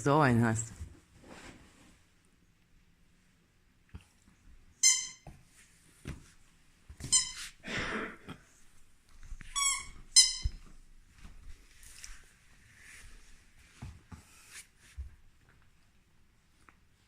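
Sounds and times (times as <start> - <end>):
squeaky toy squeaking: 4.8 - 5.2, 7.1 - 7.5, 9.5 - 10.6.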